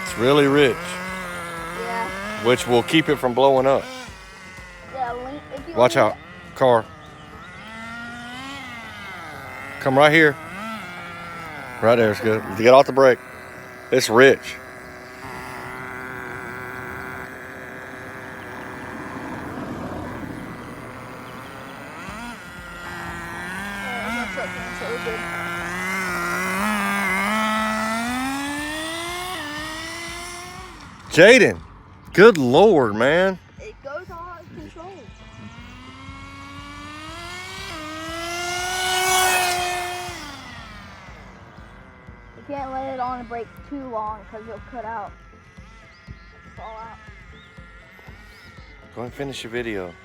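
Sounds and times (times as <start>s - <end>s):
model car nitro engine running: 0.0s - 50.0s.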